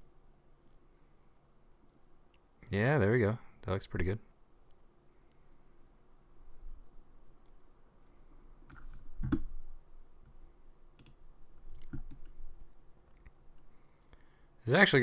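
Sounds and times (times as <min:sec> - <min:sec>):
faint low hum: 0:00.0 - 0:15.0
computer mouse clicks: 0:08.6 - 0:09.6, 0:11.0 - 0:12.4.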